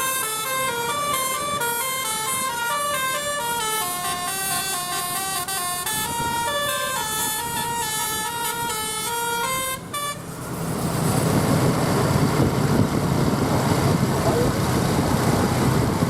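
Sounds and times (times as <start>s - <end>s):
musical air horn tune: 0.0s - 10.4s
vehicle passing close: 0.0s - 16.0s.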